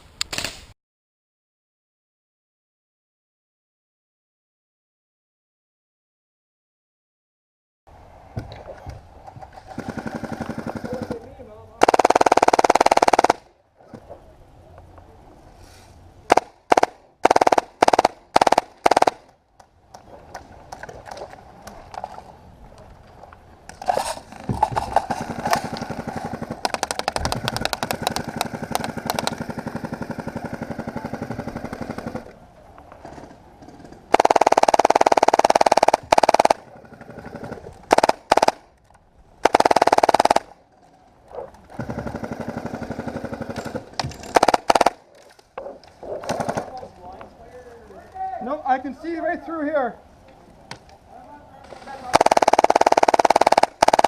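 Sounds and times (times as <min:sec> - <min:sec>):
airsoft guns firing on full auto: 0:09.7 - 0:11.2, 0:11.8 - 0:13.5, 0:16.3 - 0:19.3, 0:24.7 - 0:32.3, 0:34.1 - 0:38.7, 0:39.4 - 0:40.6, 0:41.7 - 0:45.0, 0:46.2 - 0:46.8, 0:51.6 - 0:54.0.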